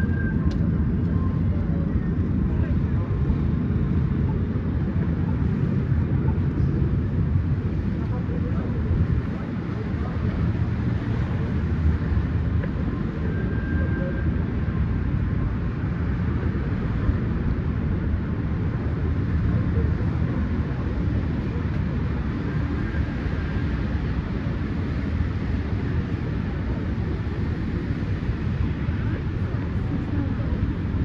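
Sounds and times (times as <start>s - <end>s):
traffic rumble: 0.0s - 31.0s.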